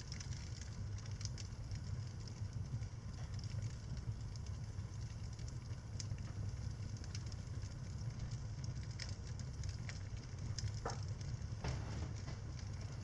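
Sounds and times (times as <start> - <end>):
steady low rumble: 0.0 - 13.0
wood fire crackling: 0.0 - 13.0
sharp pops of fire: 5.2 - 13.0.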